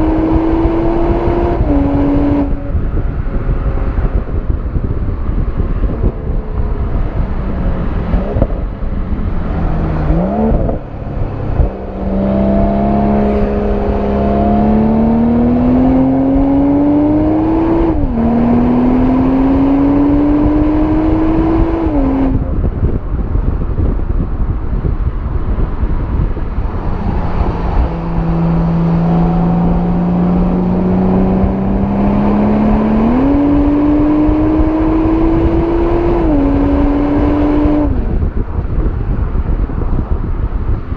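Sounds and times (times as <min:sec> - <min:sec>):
car engine revving through gear shifts: 0:00.0 - 0:02.8, 0:05.9 - 0:22.6, 0:25.8 - 0:38.2.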